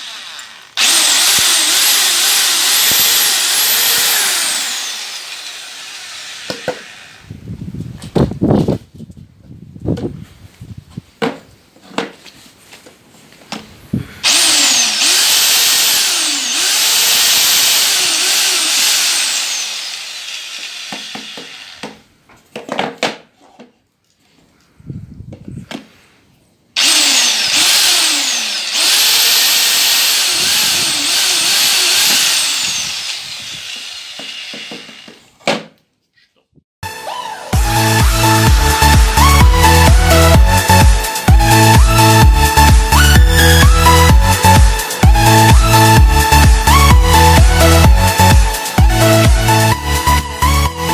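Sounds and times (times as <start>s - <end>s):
hammer drill whining: 0.0s - 7.4s, 14.2s - 22.1s, 26.8s - 35.4s, 36.9s - 50.9s.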